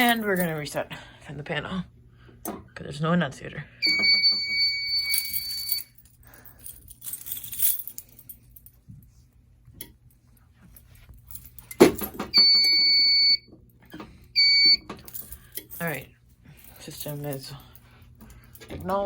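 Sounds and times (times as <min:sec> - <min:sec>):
high-pitched buzzer beep: 0:03.8 - 0:05.8, 0:12.4 - 0:13.4, 0:14.4 - 0:14.8.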